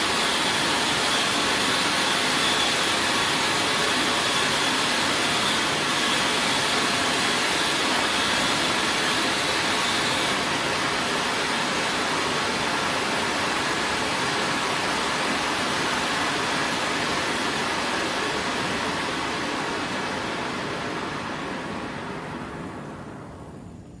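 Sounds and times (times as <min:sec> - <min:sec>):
firework fountain hissing: 0:00.0 - 0:20.3.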